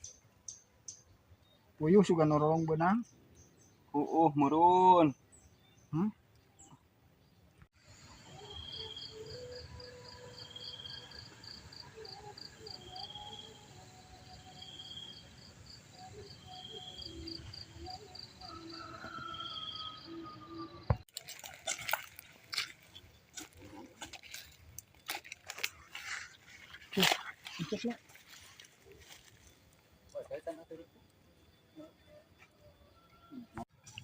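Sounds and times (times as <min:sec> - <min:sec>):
insects chirping: 0:07.8 - 0:34.0
sharp clicks and rustles: 0:21.0 - 0:29.4.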